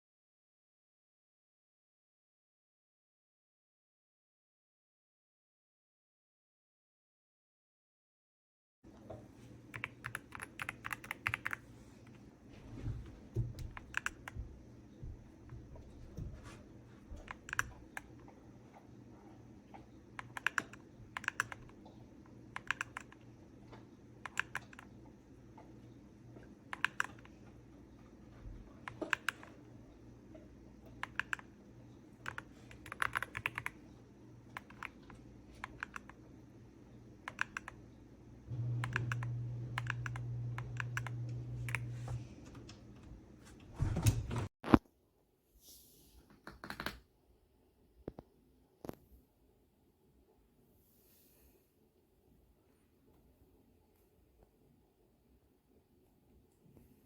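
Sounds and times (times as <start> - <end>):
low steady hum: 8.9 - 44.5
mechanical keyboard typing: 9.7 - 11.6, 13.6 - 14.4, 17.2 - 18.2, 20.2 - 21.8, 22.5 - 23.2, 24.2 - 24.9, 26.7 - 27.4, 28.8 - 29.6, 30.9 - 31.5, 32.2 - 33.8, 34.5 - 36.2, 37.2 - 37.8, 38.8 - 41.9.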